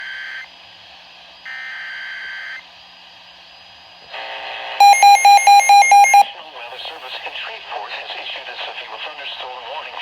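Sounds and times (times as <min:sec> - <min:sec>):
rapid electronic alert beeping: 0:04.8 - 0:06.2.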